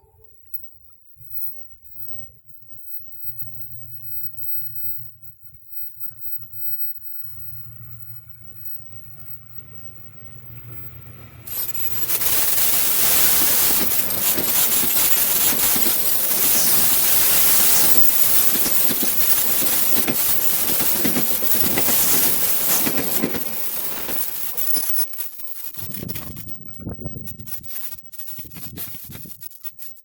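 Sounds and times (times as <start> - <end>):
train clattering: 9.6 - 26.5
train wheels rushing on rails: 9.7 - 26.3.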